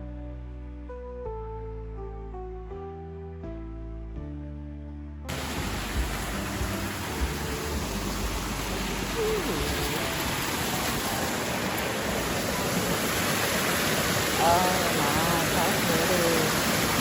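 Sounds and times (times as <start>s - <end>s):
waterfall rushing: 5.3s - 17.0s.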